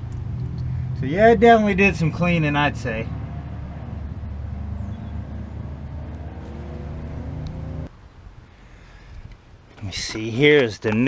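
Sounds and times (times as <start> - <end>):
engine running with low hum: 0.0 - 7.9.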